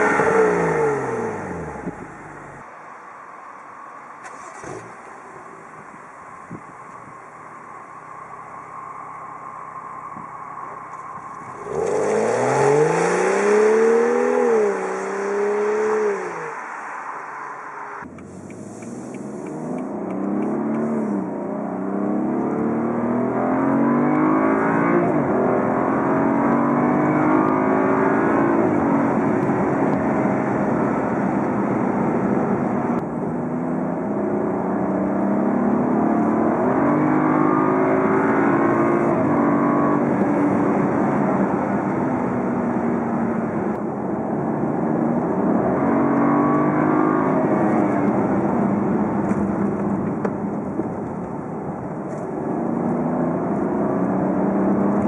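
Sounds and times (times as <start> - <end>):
car engine revving: 0.0 - 2.7, 4.2 - 55.0.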